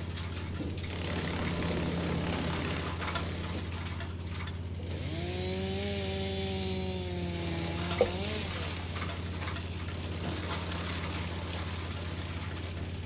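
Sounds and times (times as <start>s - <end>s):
wood chipper engine droning: 0.0s - 13.0s
wood crunching: 2.9s - 11.9s.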